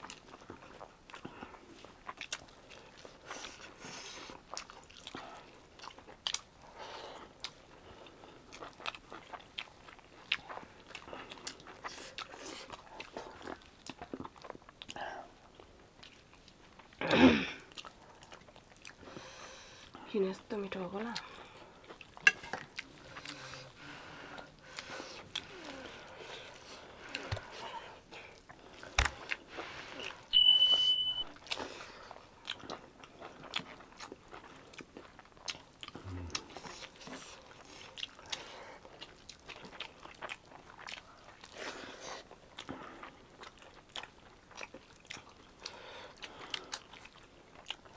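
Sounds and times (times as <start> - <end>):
wet chewing and mouth smacks: 0.0 - 17.0, 17.6 - 47.9
high-pitched beep: 30.3 - 31.4.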